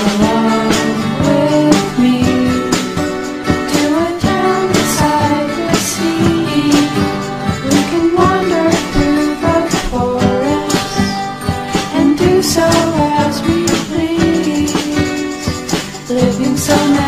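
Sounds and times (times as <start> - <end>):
plucked guitar: 0.0 - 17.0
woman singing: 0.0 - 17.0.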